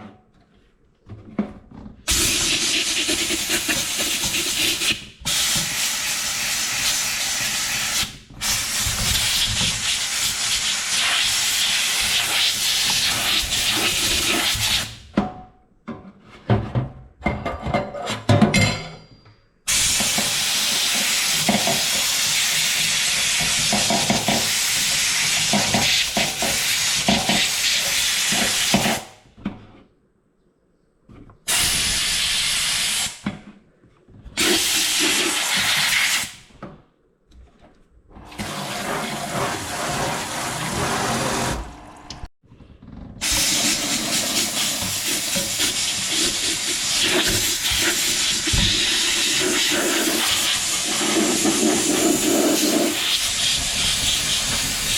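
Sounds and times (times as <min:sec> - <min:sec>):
steam cleaner hissing: 0:02.1 - 0:15.0, 0:19.7 - 0:29.1, 0:31.5 - 0:33.2, 0:34.4 - 0:36.4, 0:43.2 - 0:54.9.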